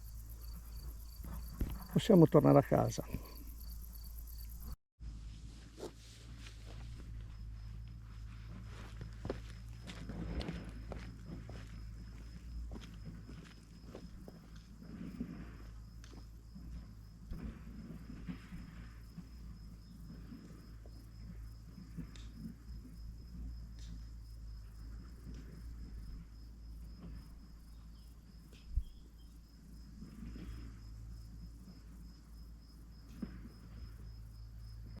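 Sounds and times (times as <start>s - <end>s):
insect trilling: 0.0s - 4.8s
wind rumble on microphone: 6.2s - 29.2s.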